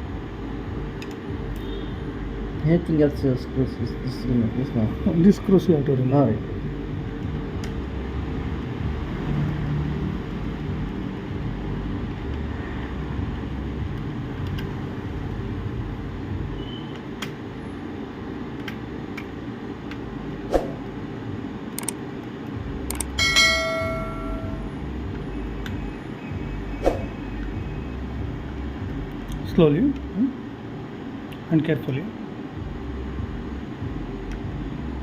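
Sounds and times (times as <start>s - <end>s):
steady low hum: 0.0s - 16.6s, 17.4s - 35.0s
screwdriver clicks and taps: 21.8s - 22.0s, 22.9s - 23.2s.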